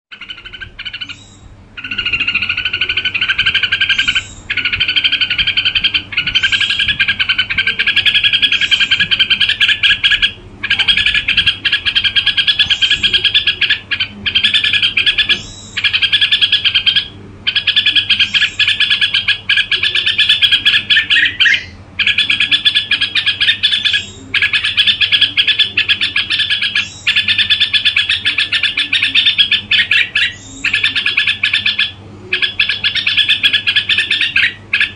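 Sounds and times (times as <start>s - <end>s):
bird trilling song: 0.1s - 34.9s.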